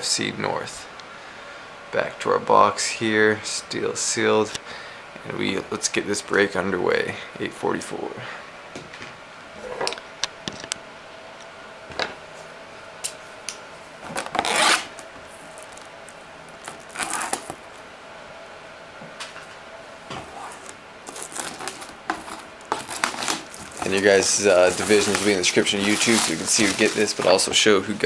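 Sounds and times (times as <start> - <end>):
faint hum: 0.0 - 28.0
shrink-wrap being cut and ripped: 14.0 - 15.9, 16.5 - 17.6, 20.4 - 27.5.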